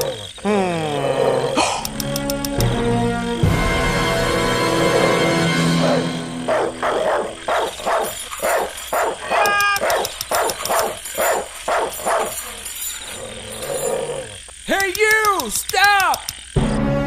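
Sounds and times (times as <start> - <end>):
dog barking: 5.8 - 12.6
dog yelping: 5.8 - 14.4.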